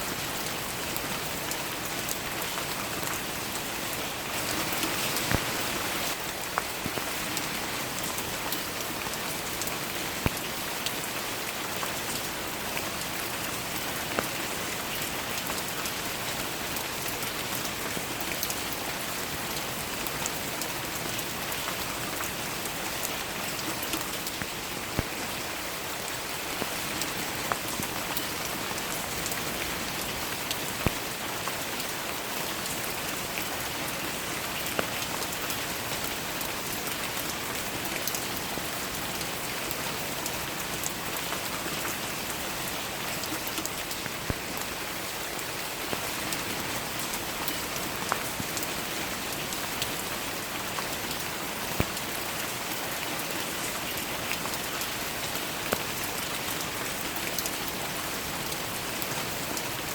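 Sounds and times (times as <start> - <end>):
raindrops striking close by: 0.0 - 59.9
steady rain falling: 0.0 - 59.9.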